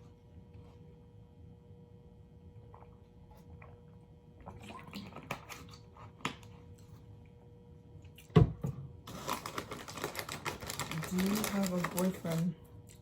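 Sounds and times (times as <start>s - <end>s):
chewing and wet mouth sounds: 2.6s - 6.9s, 12.8s - 13.0s.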